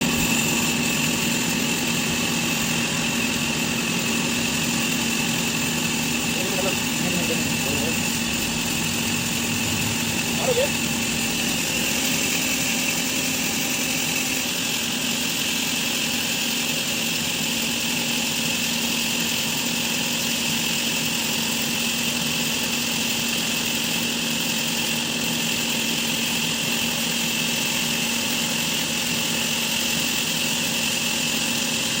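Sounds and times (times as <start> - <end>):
machine humming with high whine: 0.0 - 32.0.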